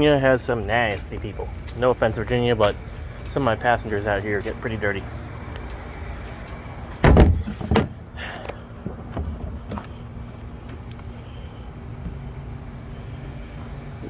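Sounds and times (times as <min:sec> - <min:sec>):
steady low rumble: 0:00.0 - 0:14.0
loud thumps: 0:06.9 - 0:08.1.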